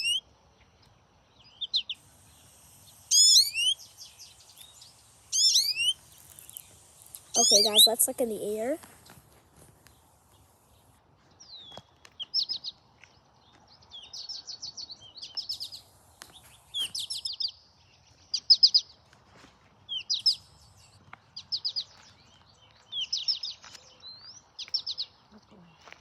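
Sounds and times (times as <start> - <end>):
recorded goldfinch calls: 0.0 - 0.2, 1.4 - 8.8, 11.5 - 12.8, 13.9 - 17.6, 18.2 - 19.0, 19.9 - 26.0.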